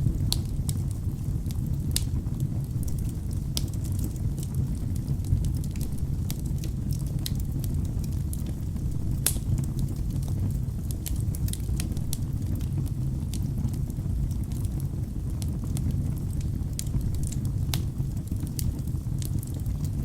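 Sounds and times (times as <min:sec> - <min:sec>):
fire rumbling: 0:00.0 - 0:20.0
logs crackling and popping: 0:00.1 - 0:20.0.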